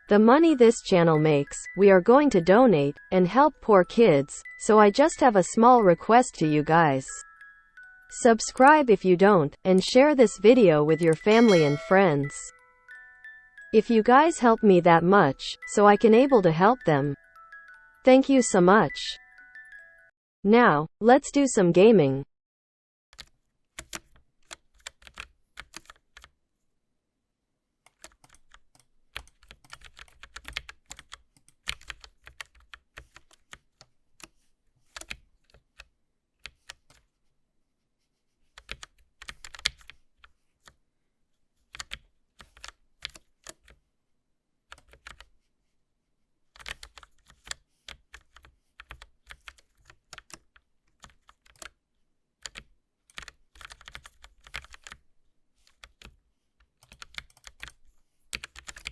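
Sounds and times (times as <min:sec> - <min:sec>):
mechanical keyboard keys clicking: 0:23.2 - 0:26.3, 0:27.9 - 0:34.3, 0:34.9 - 0:37.0, 0:38.6 - 0:40.0, 0:41.7 - 0:43.8, 0:44.7 - 0:45.3, 0:46.6 - 0:51.7, 0:52.4 - 0:55.0, 0:55.7 - 0:58.9.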